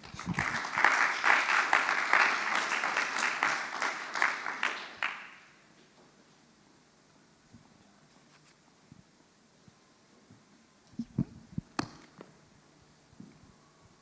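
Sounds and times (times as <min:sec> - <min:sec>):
congregation applauding: 0:00.0 - 0:05.6.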